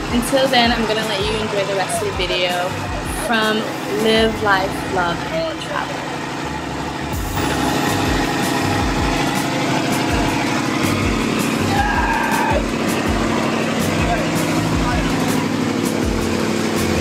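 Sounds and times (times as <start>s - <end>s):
boat engine running: 0.0s - 17.0s
rushing noise: 4.7s - 17.0s.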